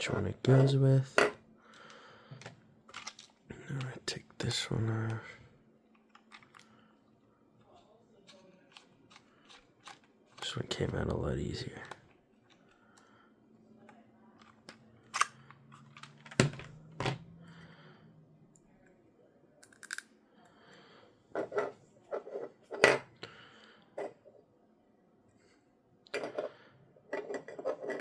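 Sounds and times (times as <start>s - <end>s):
small plastic parts clicking: 1.8s - 4.0s, 5.9s - 6.7s, 8.3s - 13.1s, 13.8s - 16.7s, 19.6s - 20.1s.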